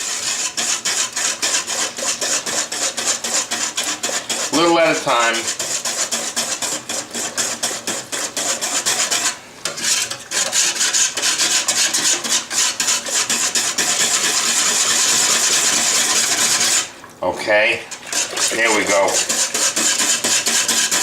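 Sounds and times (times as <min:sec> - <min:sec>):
whisk scraping in a metal pot: 0:00.0 - 0:17.1, 0:17.8 - 0:21.0.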